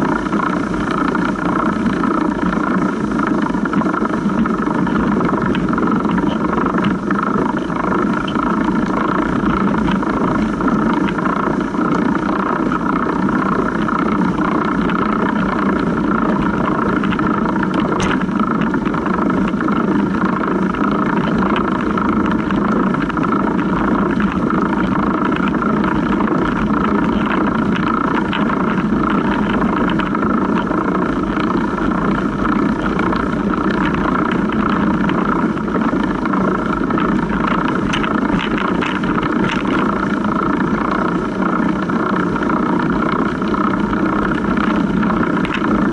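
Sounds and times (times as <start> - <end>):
bike chain whirring rattle: 0.0 - 45.9
tyres rolling through snow: 0.0 - 45.9.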